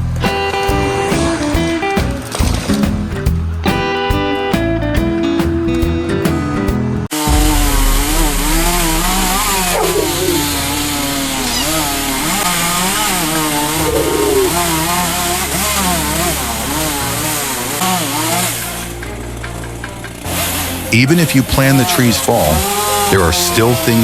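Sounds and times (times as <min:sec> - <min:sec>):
music: 0:00.0 - 0:24.0
chainsaw cutting: 0:12.3 - 0:19.1, 0:20.2 - 0:24.0.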